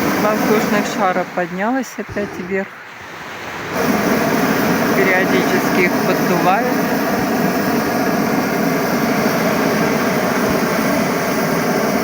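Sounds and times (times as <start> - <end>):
balloon inflator roaring: 0.0 - 12.0.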